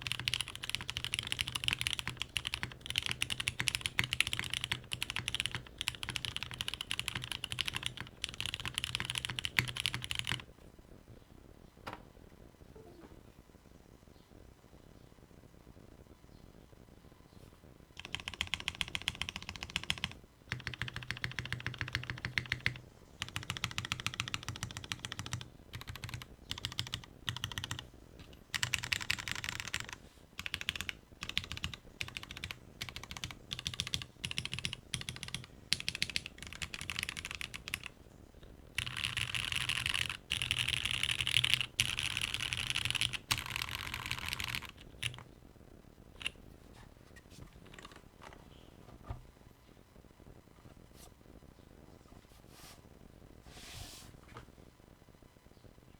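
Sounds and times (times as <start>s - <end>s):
mechanical keyboard typing: 0.0s - 10.5s, 18.0s - 37.9s, 38.8s - 45.3s, 46.2s - 46.4s, 47.6s - 48.4s.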